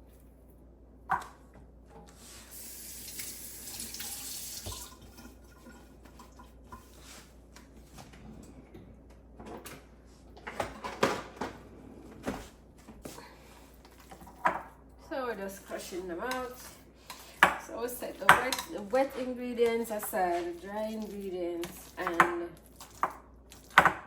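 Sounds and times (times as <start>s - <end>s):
tap running into sink: 3.1s - 5.2s.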